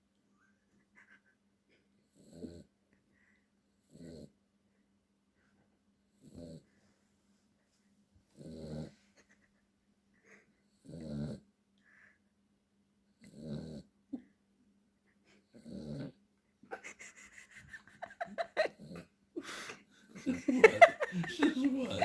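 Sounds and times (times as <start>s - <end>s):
dog snoring: 2.1s - 2.7s, 3.8s - 4.4s, 6.2s - 6.7s, 8.3s - 9.0s, 10.7s - 11.5s, 13.2s - 13.9s, 15.5s - 16.2s.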